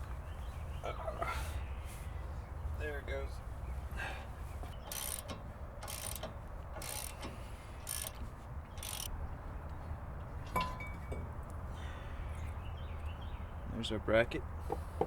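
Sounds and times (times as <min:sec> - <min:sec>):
socket ratchet ratcheting: 0:04.8 - 0:09.1.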